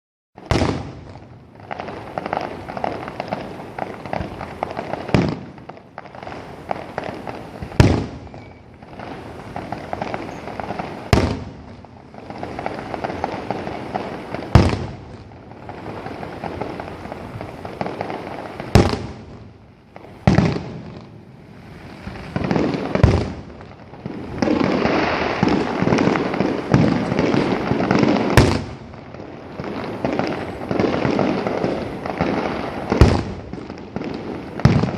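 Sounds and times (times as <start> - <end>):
firework shells booming: 0.4 - 34.9
fireworks crackling: 0.4 - 34.9.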